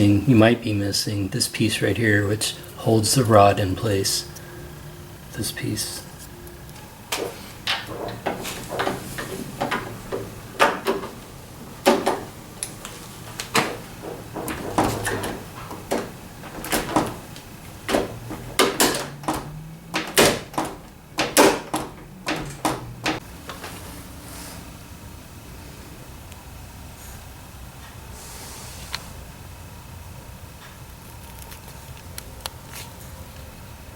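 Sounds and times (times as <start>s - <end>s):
metal lock parts clicking: 7.1s - 23.2s.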